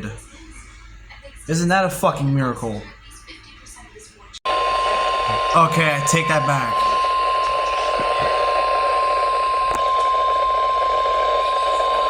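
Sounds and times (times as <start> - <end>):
steady high alarm tone: 4.5 - 12.0
radio static hiss: 5.2 - 7.1.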